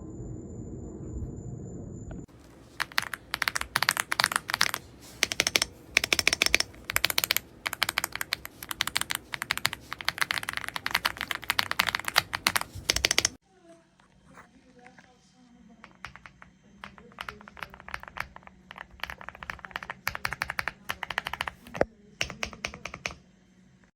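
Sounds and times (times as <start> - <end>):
low hum with high whine: 0.0 - 22.4
mechanical keyboard typing: 2.3 - 13.4, 15.8 - 23.2.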